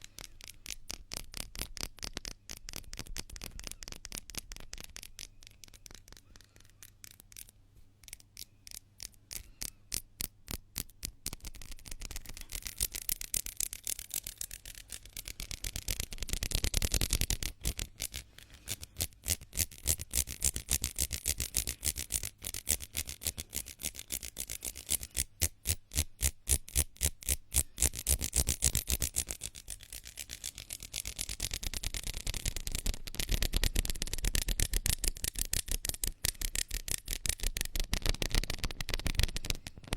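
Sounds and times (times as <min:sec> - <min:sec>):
hands rubbing together: 0:11.3 - 0:39.9.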